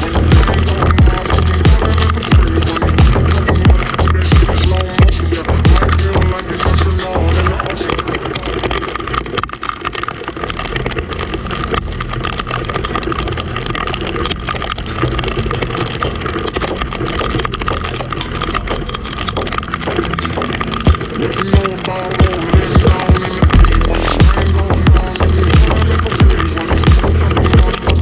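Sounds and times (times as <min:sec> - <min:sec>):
motorcycle engine running: 0:00.0 - 0:07.8, 0:22.2 - 0:28.0
wind and road noise: 0:00.0 - 0:22.2.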